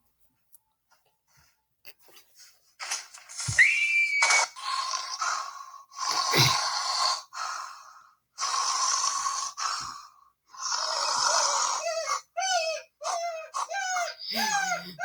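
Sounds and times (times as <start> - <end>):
person gasping: 6.2 - 6.6, 14.0 - 15.0
squeaky high-pitched vocal sounds: 11.1 - 15.0.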